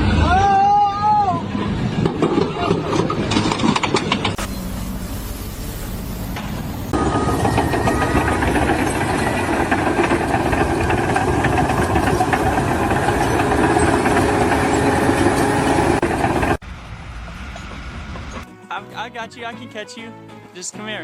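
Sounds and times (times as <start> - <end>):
machinery running loudly: 3.0 - 17.1.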